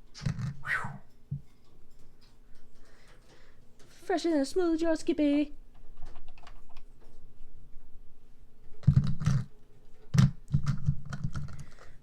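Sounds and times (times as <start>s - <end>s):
plastic toy food clicking: 10.1s - 11.9s.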